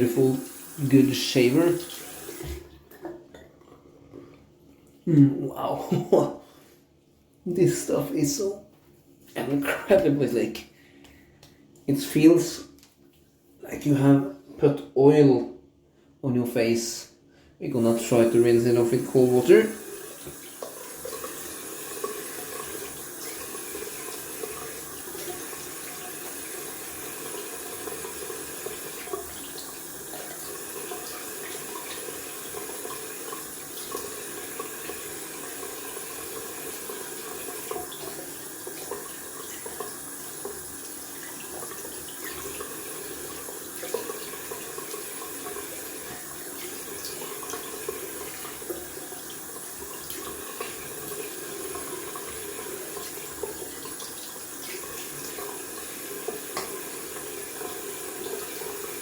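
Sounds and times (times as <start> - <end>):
tap water running into sink: 0.0 - 3.2, 17.8 - 59.0.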